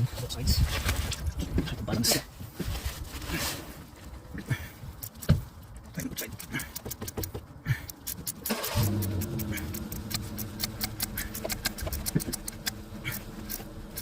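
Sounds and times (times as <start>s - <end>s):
ratchet wrench clicking: 5.0s - 5.3s, 6.2s - 14.0s
low engine-like hum: 8.6s - 14.0s.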